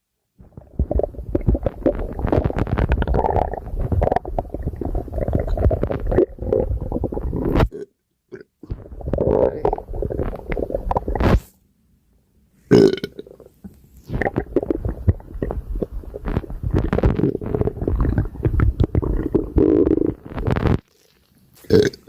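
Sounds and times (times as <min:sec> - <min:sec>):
stomach gurgling and rumbling: 0:00.4 - 0:11.5, 0:12.8 - 0:22.0
loud burp: 0:00.6 - 0:11.2, 0:12.7 - 0:13.5, 0:21.7 - 0:22.0.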